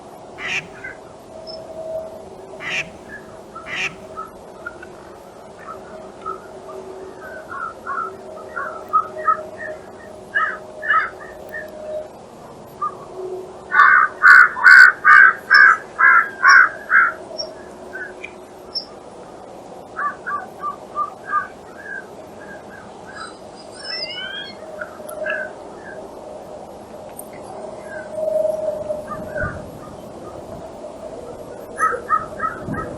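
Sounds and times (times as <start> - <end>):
wild birds calling: 0.4 - 1.0, 2.6 - 4.3
quick rising bird chirps: 2.6 - 4.2.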